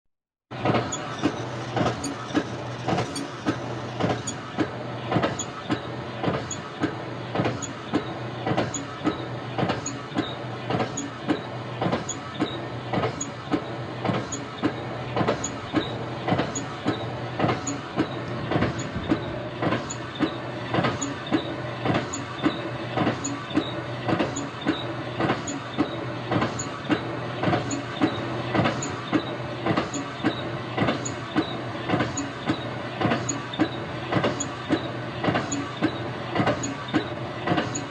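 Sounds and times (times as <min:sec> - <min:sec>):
pump knocking on each stroke: 0:00.5 - 0:37.9
pump mechanical hum: 0:00.5 - 0:37.9.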